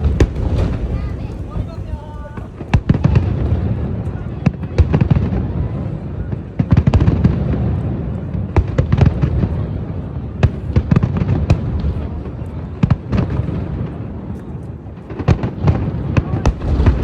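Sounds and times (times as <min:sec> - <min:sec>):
low rumble: 0:00.0 - 0:04.4
fireworks cracks and booms: 0:00.0 - 0:17.0.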